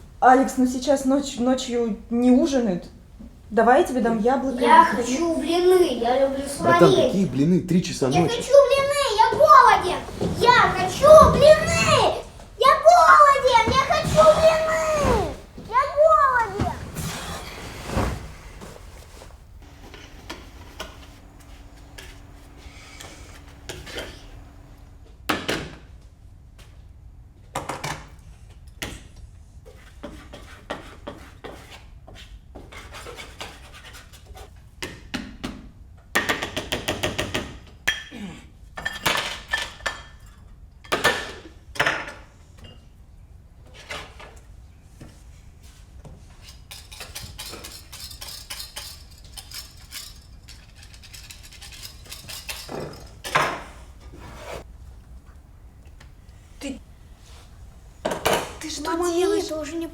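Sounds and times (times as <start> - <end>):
dishes and utensils clinking: 46.5 - 53.8.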